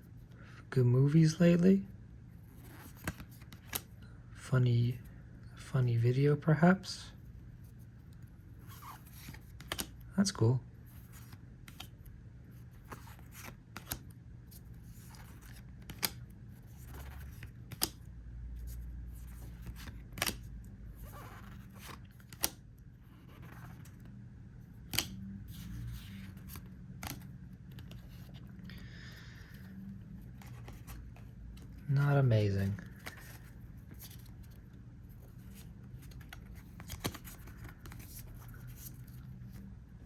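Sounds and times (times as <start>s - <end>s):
steady low hum: 0.0s - 40.0s
trading cards flipped by hand: 2.5s - 4.0s, 8.6s - 10.0s, 11.0s - 12.0s, 12.7s - 18.0s, 18.6s - 24.1s, 24.8s - 28.8s, 29.6s - 31.8s, 32.7s - 39.7s.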